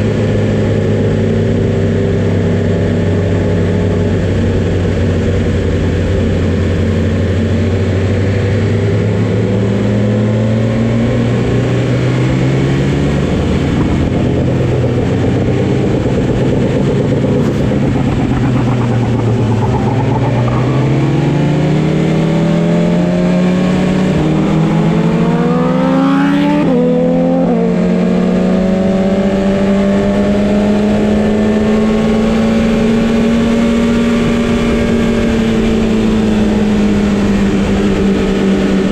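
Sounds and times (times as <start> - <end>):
wind noise: 0.0 - 26.9
motorcycle engine accelerating: 0.0 - 38.9
gear change: 13.0 - 22.9.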